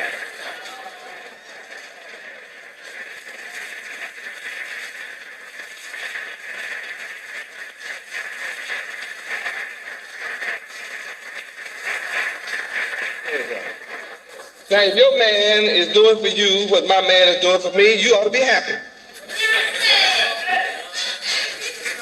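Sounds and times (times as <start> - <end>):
audience applause: 0.0 - 5.2, 19.2 - 22.0.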